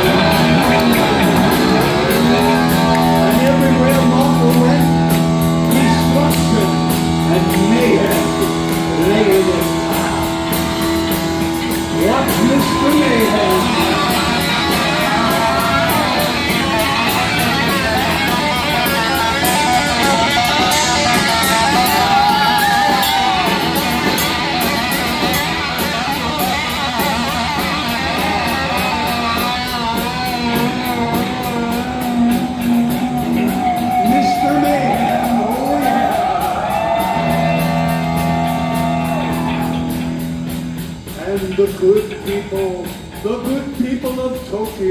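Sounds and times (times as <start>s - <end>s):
distorted electric guitar lead: 0.0s - 44.9s
heavy metal band playing live: 0.0s - 44.9s.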